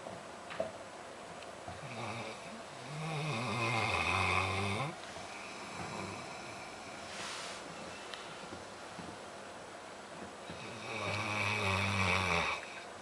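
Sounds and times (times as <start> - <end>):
pet snoring: 1.8 - 7.5, 10.5 - 12.8.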